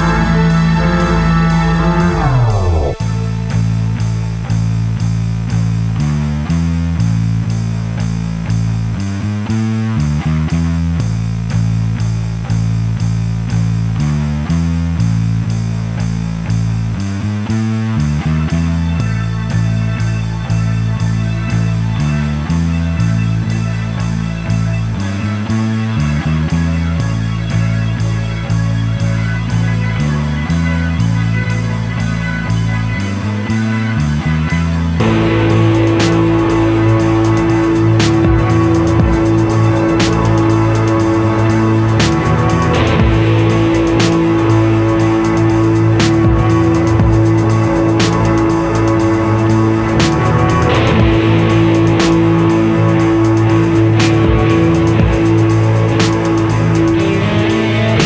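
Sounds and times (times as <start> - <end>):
guitar rock music: 0.0 - 4.7, 19.0 - 58.0.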